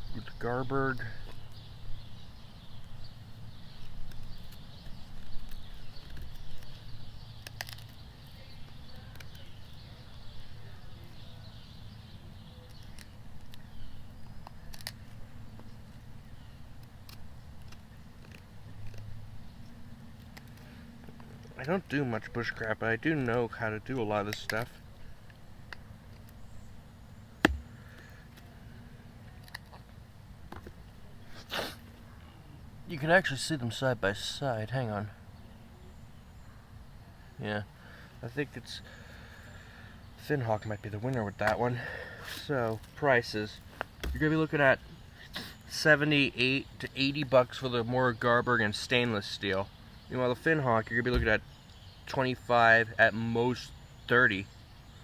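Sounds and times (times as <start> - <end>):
sharp knock: 27.4 - 27.7
knife cutting into hard wood: 27.4 - 27.8.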